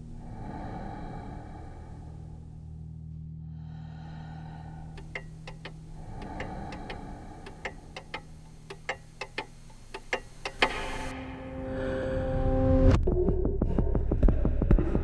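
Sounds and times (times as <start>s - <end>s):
steady low hum: 0.0s - 15.0s
sharp clicks: 5.0s - 11.1s.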